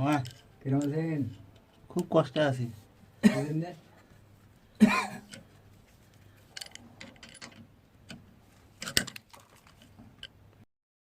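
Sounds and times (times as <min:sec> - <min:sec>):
tools clicking and tapping: 0:00.0 - 0:02.2, 0:05.2 - 0:05.6, 0:06.4 - 0:10.4.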